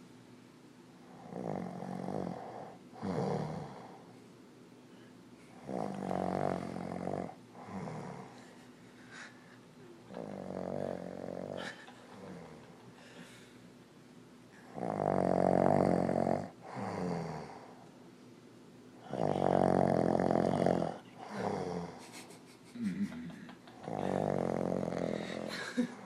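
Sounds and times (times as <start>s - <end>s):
man snoring: 1.1s - 4.0s, 5.6s - 8.4s, 10.1s - 12.6s, 14.7s - 17.7s, 19.0s - 22.0s, 22.8s - 25.8s.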